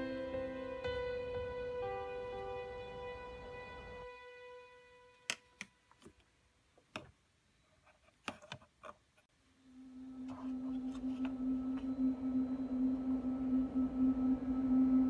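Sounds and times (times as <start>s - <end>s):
background music: 0.0s - 5.8s
steady low tone: 9.6s - 15.0s.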